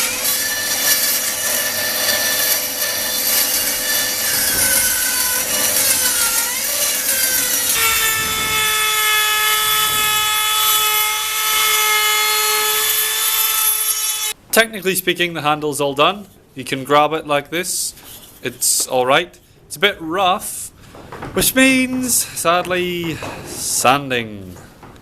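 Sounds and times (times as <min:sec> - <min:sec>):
power tool cutting wood: 0:00.0 - 0:14.4.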